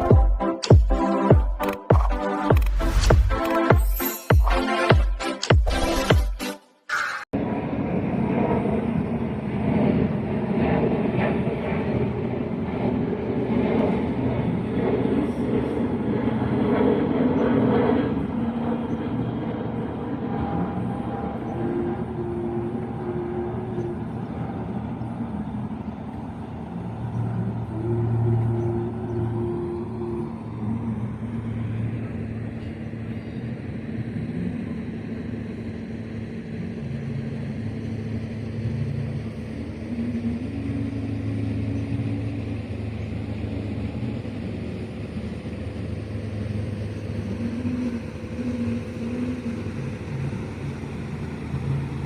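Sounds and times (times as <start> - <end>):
constant hum: 0.0 - 6.5, 7.3 - 52.0
engines rumbling: 7.2 - 52.0
short droning tones: 19.8 - 52.0.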